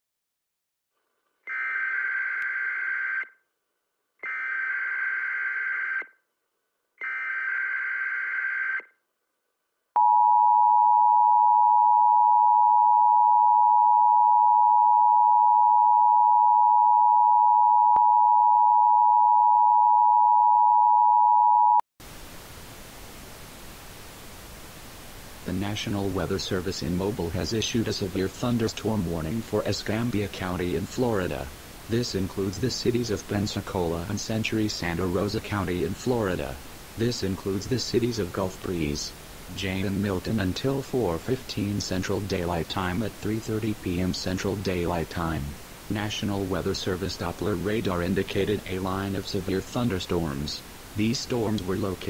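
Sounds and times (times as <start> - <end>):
static hiss: 22.0 - 52.0.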